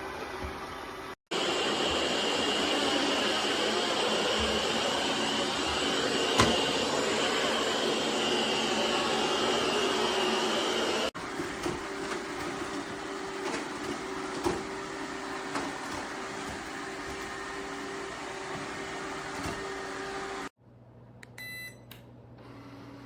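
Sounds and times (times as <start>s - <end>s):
short electronic beep: 21.4s - 21.8s.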